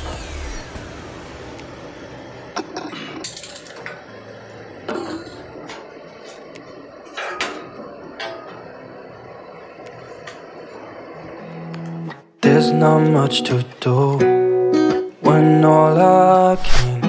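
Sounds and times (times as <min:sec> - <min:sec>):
low hum: 0:00.0 - 0:12.4.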